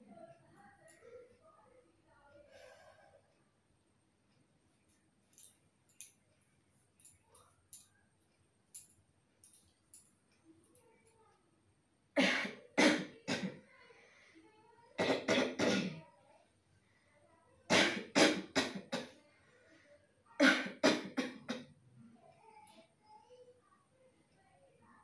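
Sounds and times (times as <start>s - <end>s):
person coughing: 15.0s - 16.0s.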